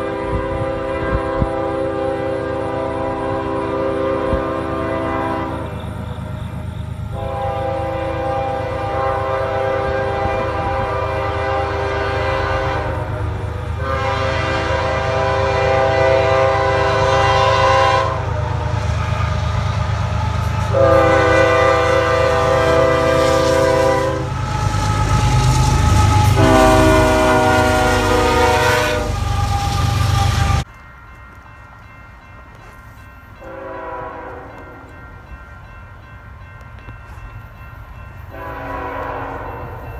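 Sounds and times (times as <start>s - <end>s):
locomotive air horn blasts: 0.0s - 6.3s, 7.1s - 19.4s, 20.6s - 30.6s, 33.4s - 34.9s, 38.3s - 39.9s
passing train rumble: 0.0s - 39.9s.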